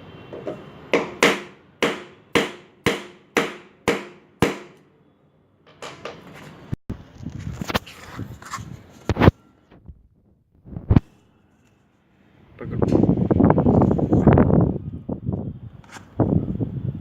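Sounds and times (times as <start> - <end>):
hammer blows ringing: 0.6 - 4.9.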